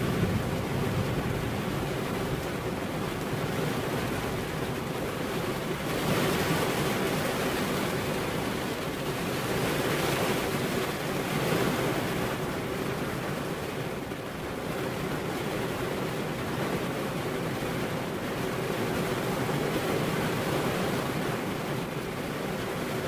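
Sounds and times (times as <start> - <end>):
heavy rain falling: 0.0 - 23.0.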